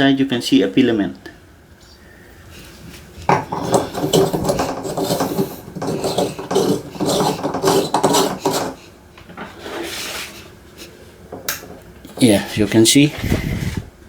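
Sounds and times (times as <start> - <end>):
hard objects scraping and knocking: 2.7 - 13.8.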